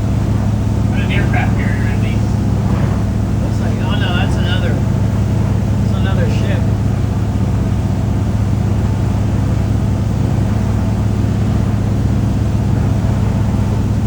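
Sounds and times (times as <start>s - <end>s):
motorboat engine droning: 0.0s - 14.0s.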